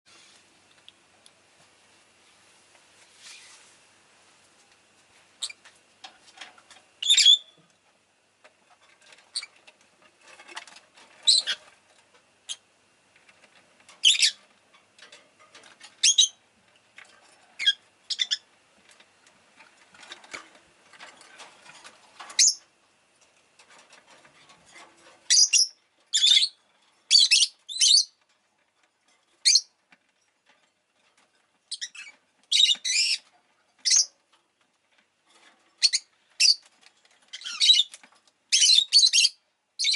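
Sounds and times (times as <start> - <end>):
faint rustling and scratching: 0.1 - 7.0, 7.6 - 38.6
lovebird chirping: 7.0 - 7.6, 14.0 - 14.4, 17.6 - 18.4, 25.3 - 28.1, 31.7 - 33.2, 38.5 - 39.9.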